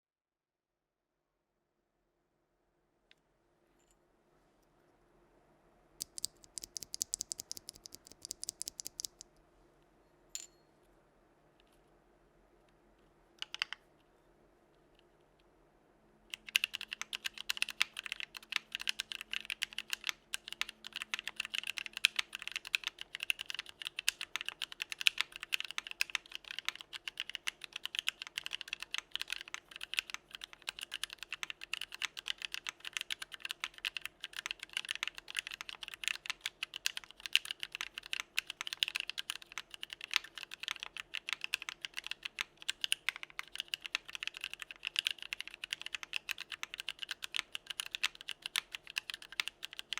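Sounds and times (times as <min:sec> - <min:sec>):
fast typing on mechanical keyboard: 0:06.0 - 0:09.3, 0:13.4 - 0:13.8, 0:16.3 - 0:49.9.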